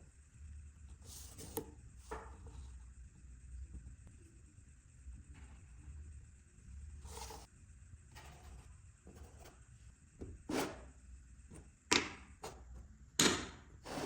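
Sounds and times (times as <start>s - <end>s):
wood and tools knocking and scraping: 1.1s - 2.7s.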